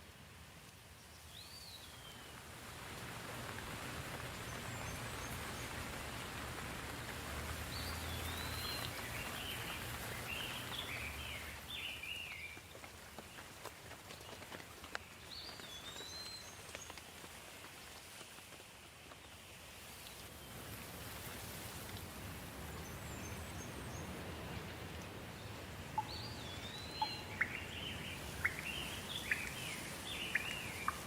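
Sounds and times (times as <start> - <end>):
steady rain: 0.0 - 31.0
birds singing: 7.7 - 12.6, 25.4 - 31.0
water drops ticking: 25.9 - 29.6.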